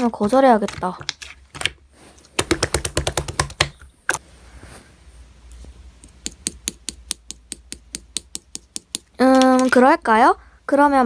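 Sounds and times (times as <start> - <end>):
typing on a keyboard: 2.4 - 3.8.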